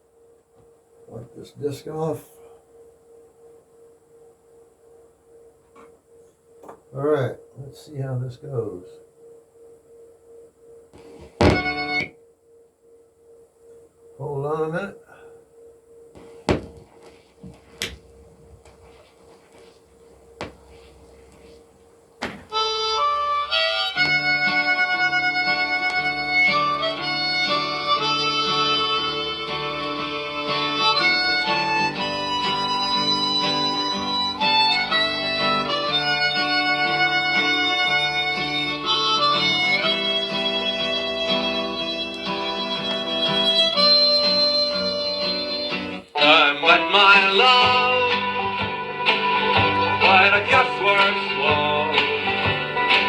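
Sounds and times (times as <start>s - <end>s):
faint steady tone: 0.0s - 46.2s
instrumental song playback: 16.2s - 53.0s
record clicks: 16.4s - 18.9s, 42.0s - 42.4s.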